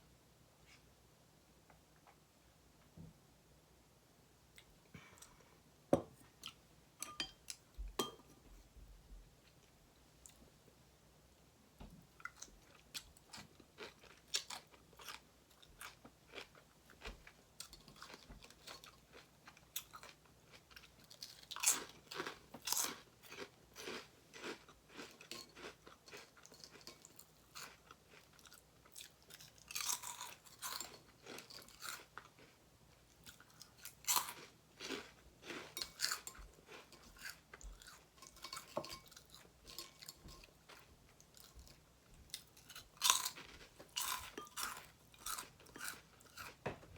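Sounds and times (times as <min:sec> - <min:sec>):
person chewing crisp food: 0:12.2 - 0:46.9.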